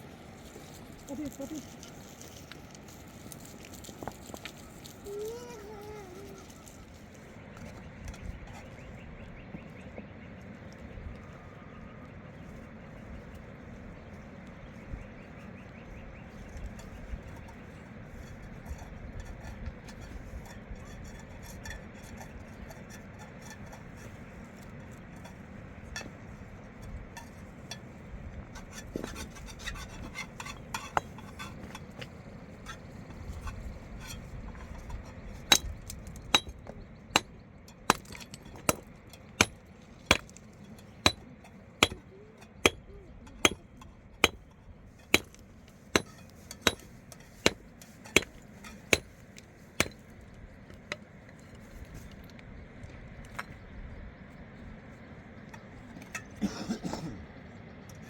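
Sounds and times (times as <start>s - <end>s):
hand tool striking hard: 35.5s - 40.4s, 41.0s - 41.2s, 41.8s - 49.2s.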